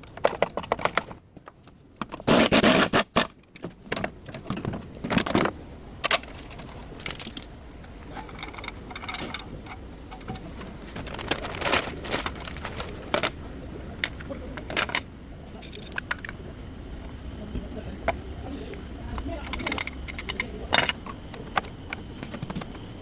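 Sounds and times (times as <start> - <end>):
metal hand tools clinking: 6.8 - 10.5, 14.0 - 16.4, 19.1 - 22.4.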